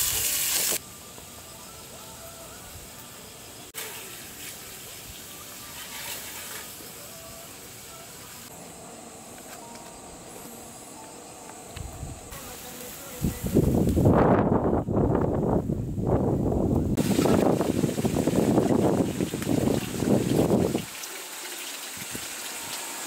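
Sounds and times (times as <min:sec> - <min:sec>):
food sizzling in a pan: 0:00.0 - 0:08.5, 0:17.0 - 0:23.0.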